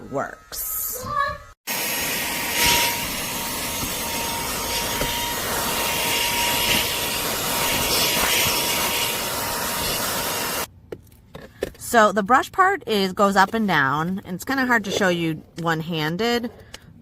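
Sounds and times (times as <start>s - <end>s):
handheld vacuum running: 1.7s - 10.7s.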